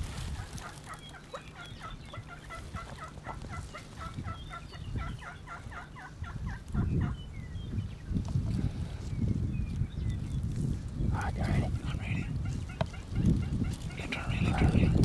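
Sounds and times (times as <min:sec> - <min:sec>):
turkey yelping: 0:00.3 - 0:07.2.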